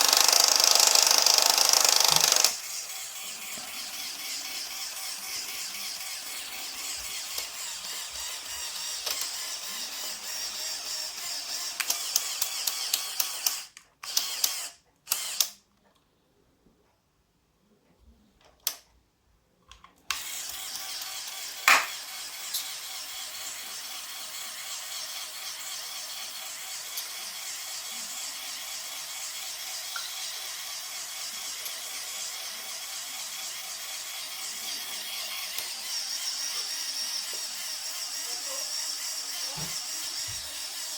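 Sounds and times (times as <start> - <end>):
electric motor whirring gears: 0.0 - 15.6, 20.1 - 40.9.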